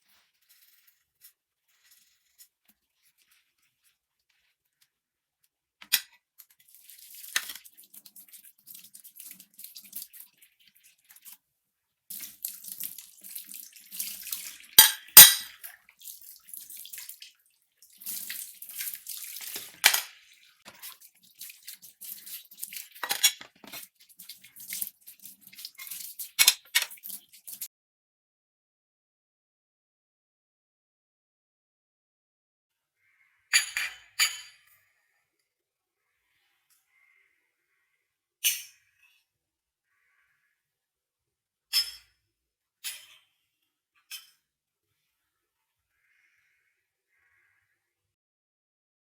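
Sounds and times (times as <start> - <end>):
water splashing in sink: 6.4 - 11.4, 12.1 - 27.7
dishware knocking: 14.8 - 15.5.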